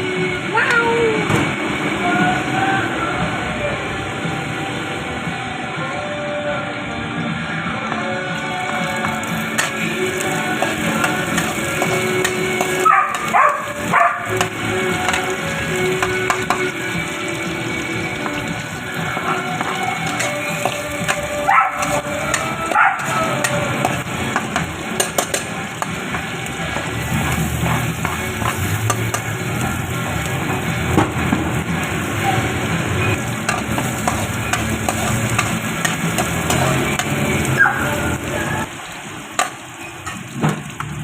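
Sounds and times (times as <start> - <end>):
chicken sizzling in a pan: 8.4 - 41.0.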